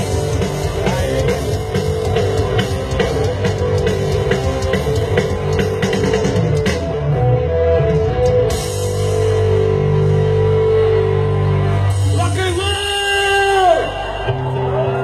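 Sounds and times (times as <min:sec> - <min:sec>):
drum kit: 0:00.0 - 0:10.7
electric guitar: 0:00.0 - 0:12.1.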